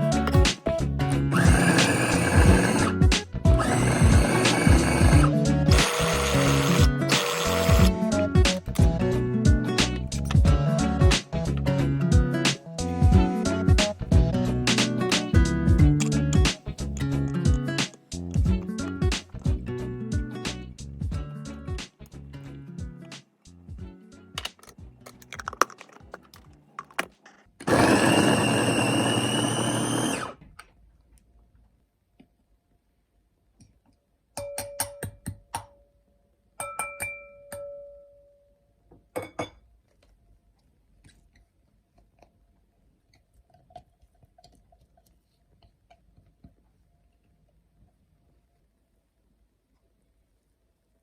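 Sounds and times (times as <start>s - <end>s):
background music: 0.0s - 27.0s, 27.6s - 30.3s
electric blender whine: 1.3s - 8.0s, 27.6s - 30.4s.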